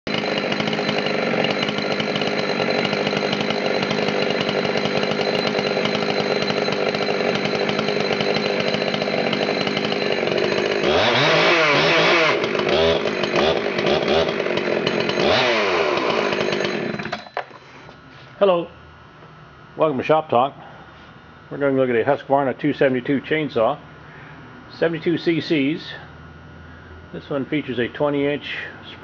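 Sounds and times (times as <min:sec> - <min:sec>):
chainsaw engine revving: 0:00.1 - 0:17.4.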